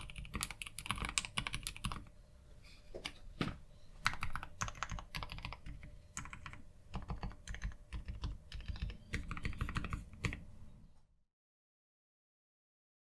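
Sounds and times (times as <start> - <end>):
typing on mechanical keyboard: 0.0 - 2.1, 4.0 - 10.4.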